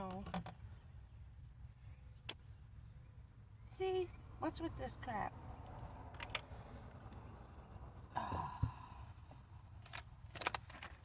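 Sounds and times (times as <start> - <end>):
handling clicks and knocks: 0.0 - 0.6
person sighing: 8.1 - 9.1.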